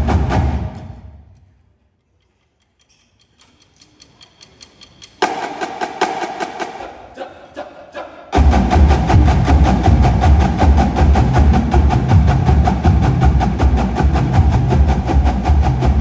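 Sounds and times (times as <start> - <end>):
marching drumline playing: 0.0 - 1.2, 5.2 - 6.8, 8.4 - 16.0.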